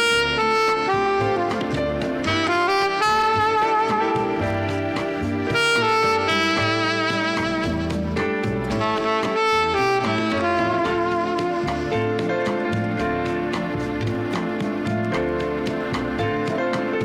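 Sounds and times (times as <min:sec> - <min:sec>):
alto saxophone slow melody: 0:00.0 - 0:12.6
bass line accompaniment: 0:00.0 - 0:17.0.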